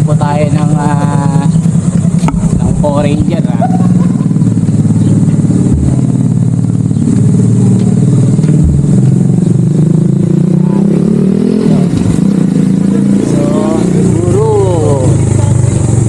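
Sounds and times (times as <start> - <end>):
vehicle engine running: 0.0 - 16.0
low thuds: 1.6 - 10.3.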